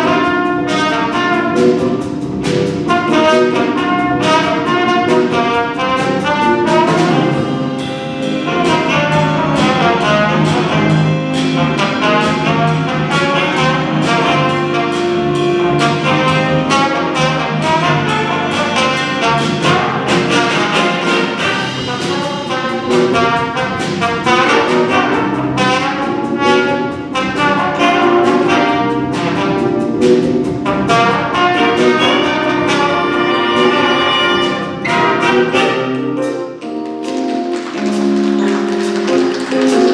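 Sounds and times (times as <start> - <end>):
drums keeping a steady beat: 0.0 - 39.9
jazz big band playing: 0.0 - 39.9
trumpets and trombones: 0.0 - 39.9.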